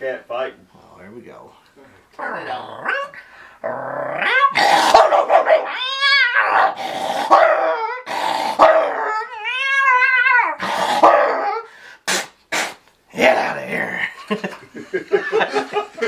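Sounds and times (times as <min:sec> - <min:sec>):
man snarling and barking: 0:02.2 - 0:09.2, 0:10.4 - 0:14.2.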